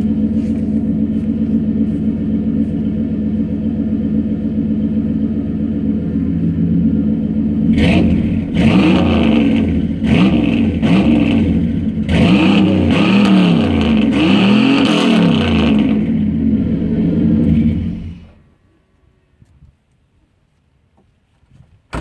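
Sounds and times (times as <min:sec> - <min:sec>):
engine revving in quick blips: 0:07.7 - 0:18.4.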